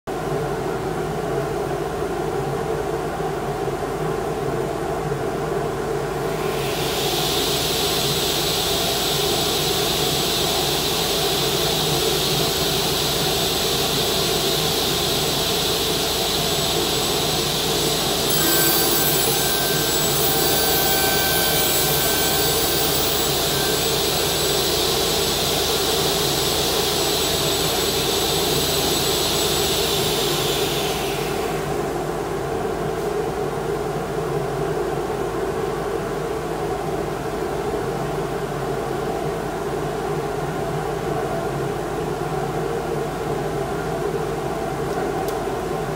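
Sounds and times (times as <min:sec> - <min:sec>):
steady low hum: 0:05.4 - 0:35.3
table saw whining: 0:06.2 - 0:32.7.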